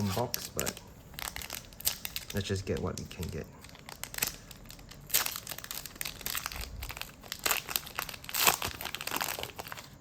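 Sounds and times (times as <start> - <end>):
foil wrapper crinkling: 0.0 - 10.0.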